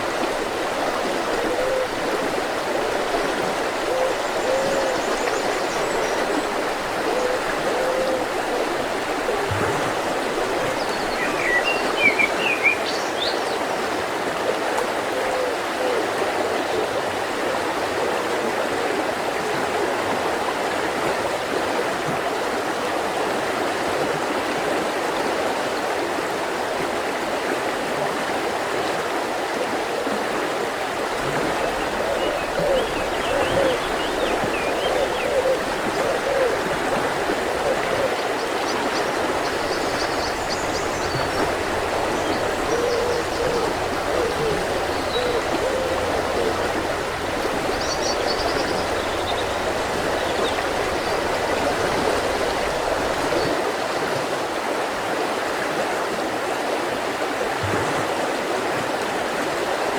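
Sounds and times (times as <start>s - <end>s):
river flowing over rocks: 0.0s - 14.6s, 28.6s - 57.4s
small bird chirping: 38.7s - 53.2s.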